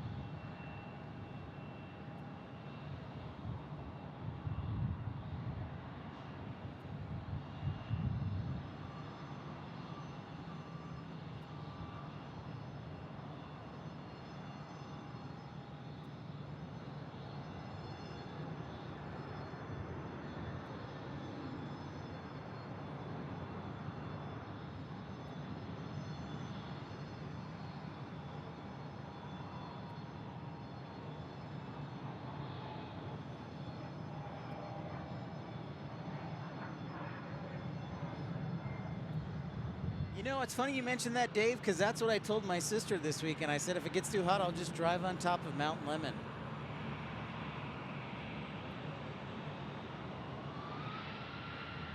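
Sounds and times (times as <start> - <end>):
jet engines rumbling: 38.2 - 51.9.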